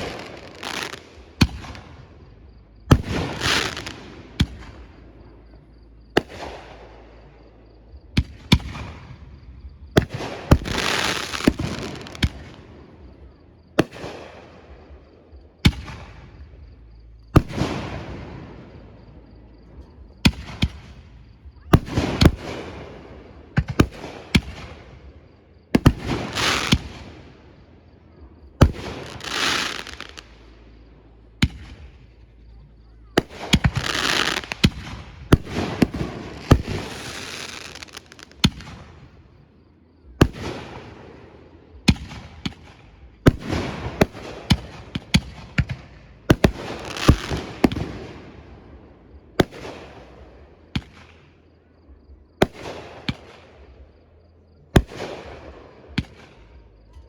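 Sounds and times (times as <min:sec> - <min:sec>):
firework crackling hissing tail: 0:00.0 - 0:15.0, 0:25.8 - 0:27.5, 0:28.6 - 0:31.8, 0:33.2 - 0:39.0, 0:42.0 - 0:48.3
firework shells bursting: 0:25.8 - 0:27.0, 0:28.6 - 0:30.4, 0:33.5 - 0:38.8.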